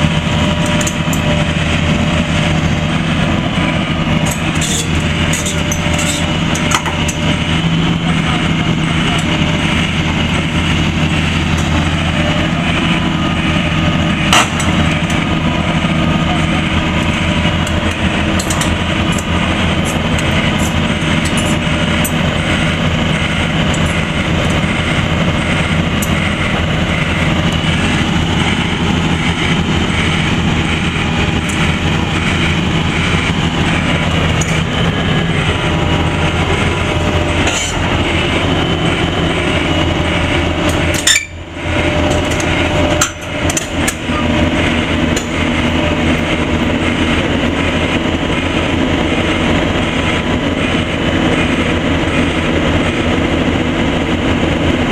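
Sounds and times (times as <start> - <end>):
excavator diesel engine running: 0.0 - 54.9
metal knocks and clatter: 4.2 - 7.2.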